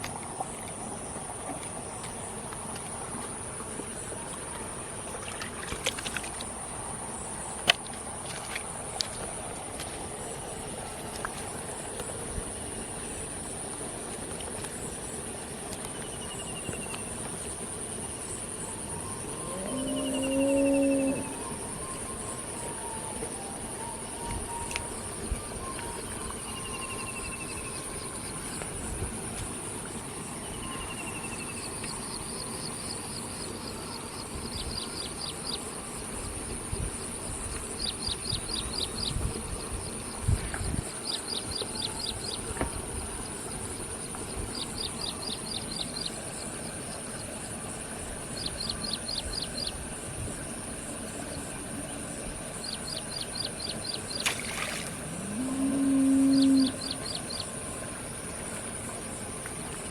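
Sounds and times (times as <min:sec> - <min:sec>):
insect chirping trills: 0:00.0 - 0:59.9
insects whining: 0:00.0 - 0:59.9
falling bird calls: 0:54.0 - 0:57.0.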